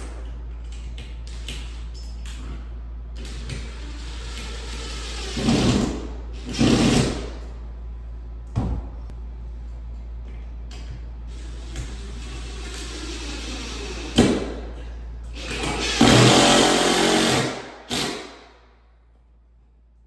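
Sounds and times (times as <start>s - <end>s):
cordless drill driving screw: 15.4s - 18.2s.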